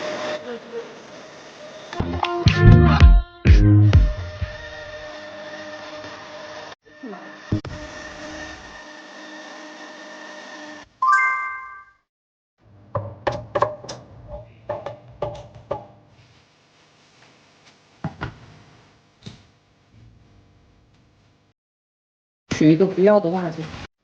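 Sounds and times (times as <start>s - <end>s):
bright electronic chime: 11.0s - 12.0s
sharp knocks and clicks: 13.0s - 15.9s.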